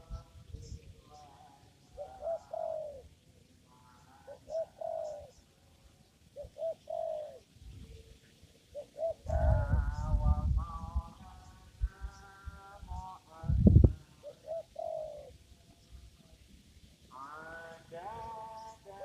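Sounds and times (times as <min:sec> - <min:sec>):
dove cooing: 0:01.9 - 0:03.1, 0:04.0 - 0:05.4, 0:06.4 - 0:08.1, 0:08.7 - 0:10.5, 0:13.9 - 0:15.5.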